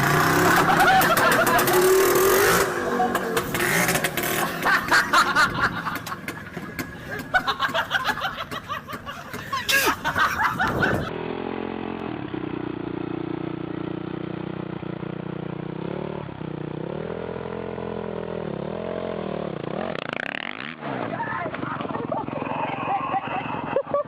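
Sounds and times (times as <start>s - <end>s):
motorcycle engine running: 0.0s - 9.5s, 10.6s - 23.7s
voices: 21.0s - 24.0s.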